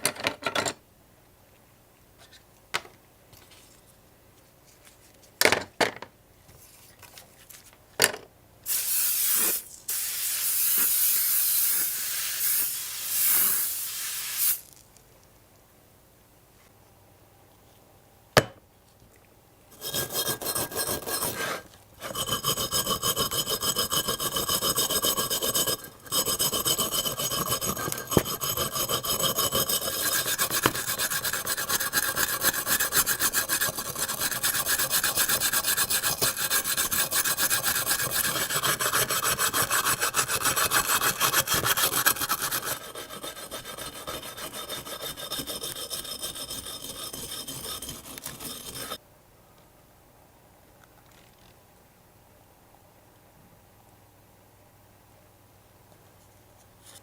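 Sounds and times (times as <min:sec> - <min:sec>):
rasping scrape on metal: 0:19.8 - 0:49.0.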